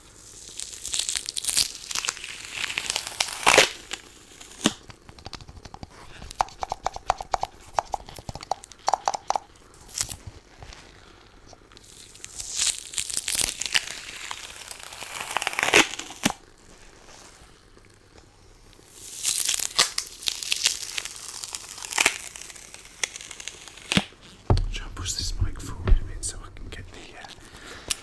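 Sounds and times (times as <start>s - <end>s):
quick taps: 24.5s - 27.0s.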